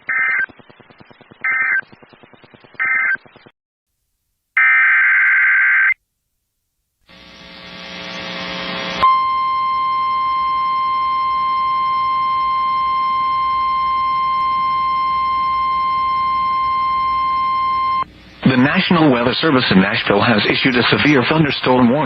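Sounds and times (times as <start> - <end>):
radio receiver hiss: 0.0 - 3.5, 7.1 - 9.0, 18.0 - 22.0
high-pitched alarm tone: 9.0 - 18.0.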